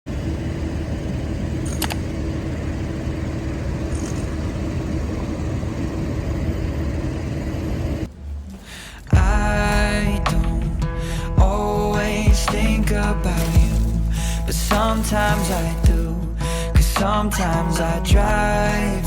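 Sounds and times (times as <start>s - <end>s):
rumbling machine hum: 0.1s - 19.0s.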